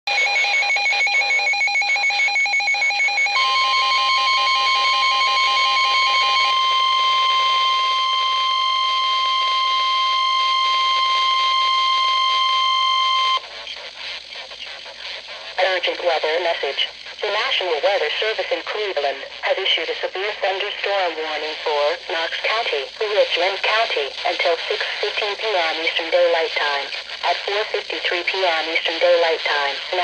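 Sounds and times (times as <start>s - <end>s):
steady warning alarm tone: 0.1s - 13.4s.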